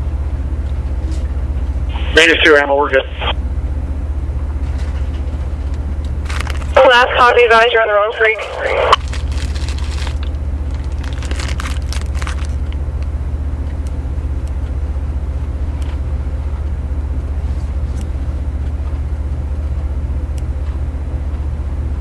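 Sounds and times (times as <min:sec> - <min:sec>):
low motor hum: 0:00.0 - 0:22.0
short crackles: 0:08.3 - 0:12.8.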